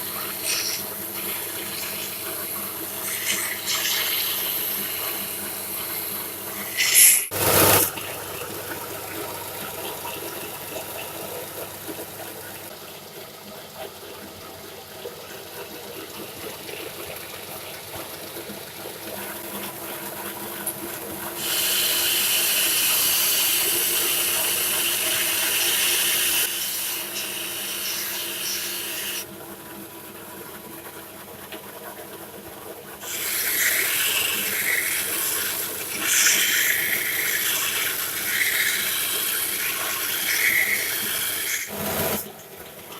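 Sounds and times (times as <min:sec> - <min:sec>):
loud hissing sanding: 0:00.0 - 0:00.9, 0:21.4 - 0:29.2, 0:33.0 - 0:41.7.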